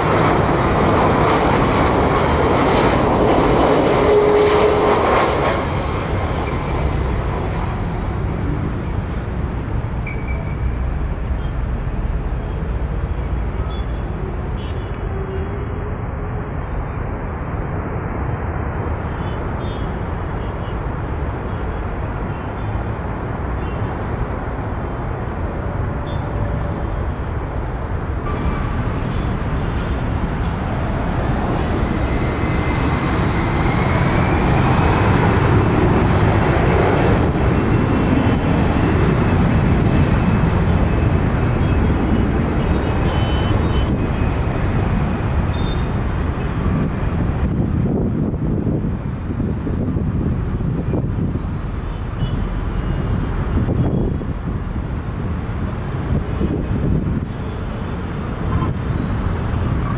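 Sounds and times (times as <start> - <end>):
jet engines rumbling and whining: 0.0 - 59.9.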